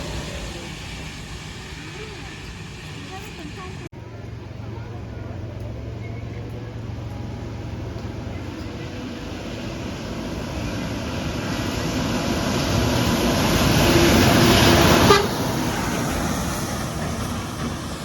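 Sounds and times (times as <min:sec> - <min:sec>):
bus passing close: 0:00.0 - 0:18.0
light traffic: 0:00.0 - 0:18.0
low bus horn note: 0:15.0 - 0:15.4.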